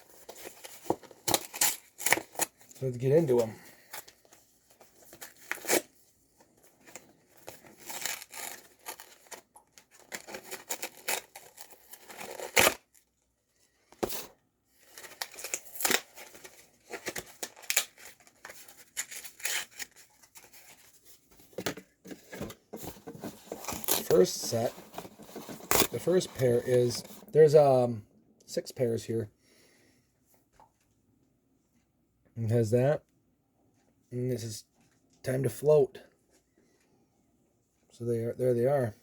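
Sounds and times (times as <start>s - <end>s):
packaging tearing and rustling: 0.1s - 4.2s, 4.9s - 5.9s, 6.8s - 13.0s, 14.0s - 21.0s, 22.3s - 27.3s.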